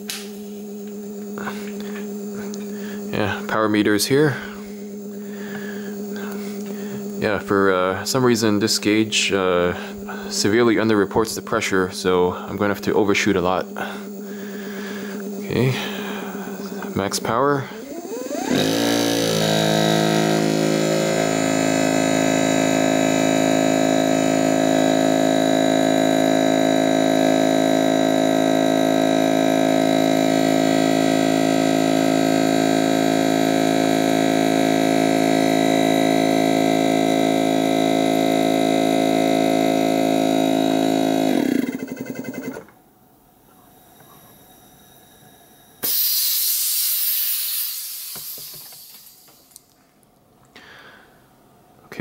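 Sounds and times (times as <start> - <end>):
compressor humming: 0.0 - 52.0.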